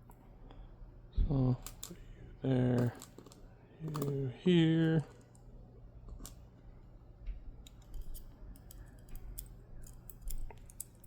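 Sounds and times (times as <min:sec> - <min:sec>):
steady low hum: 0:00.0 - 0:11.0
small metal parts clicking: 0:01.6 - 0:02.0, 0:02.7 - 0:05.5, 0:07.6 - 0:11.0.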